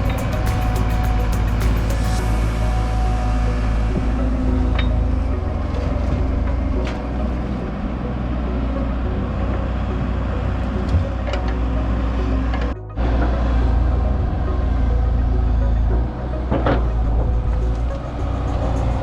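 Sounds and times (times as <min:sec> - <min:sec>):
excavator diesel engine running: 0:00.0 - 0:19.0.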